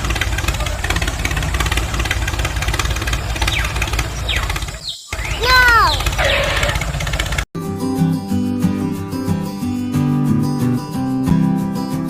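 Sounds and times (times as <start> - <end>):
engine idling: 0.0 - 7.5.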